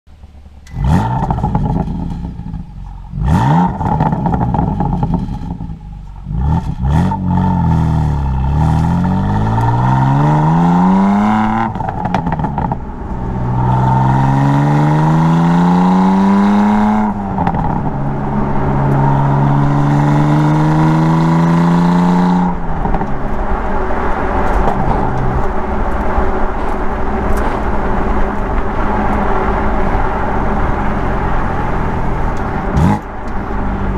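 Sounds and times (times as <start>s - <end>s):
road noise: 0.1s - 33.9s
exhaust pops and crackles: 0.2s - 3.0s, 3.6s - 6.8s, 11.6s - 12.9s, 22.7s - 23.5s, 24.1s - 29.3s
car engine revving: 0.2s - 33.9s.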